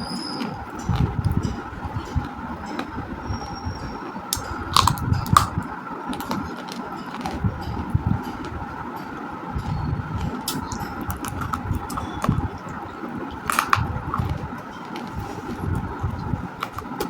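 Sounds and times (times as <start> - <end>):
steady hum: 0.0 - 17.0
dull chewing thuds: 0.1 - 17.0
crunching clay chunks: 4.3 - 7.7, 9.7 - 17.0.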